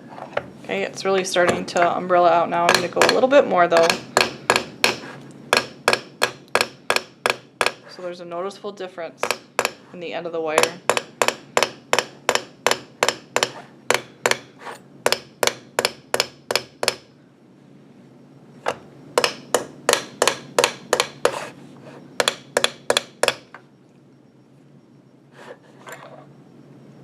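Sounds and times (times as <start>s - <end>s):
hammer tapping on wire: 2.6s - 7.8s, 9.2s - 9.8s, 10.6s - 14.5s, 15.1s - 17.1s, 18.7s - 21.4s, 22.2s - 23.6s.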